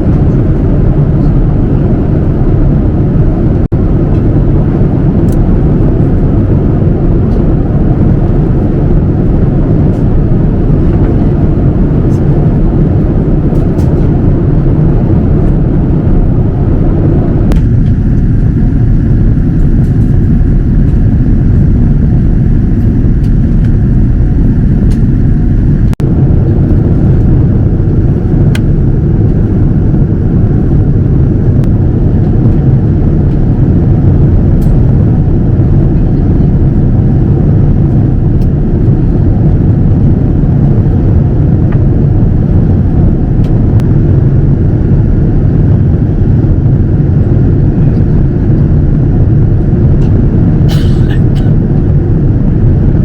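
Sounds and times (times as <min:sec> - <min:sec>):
jet engine rumble in cabin: 0:00.0 - 0:53.0
high airflow hiss: 0:50.7 - 0:51.5.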